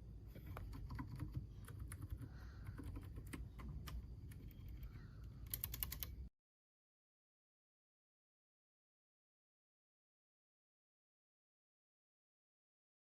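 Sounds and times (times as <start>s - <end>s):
typing on mechanical keyboard: 0.4s - 6.2s.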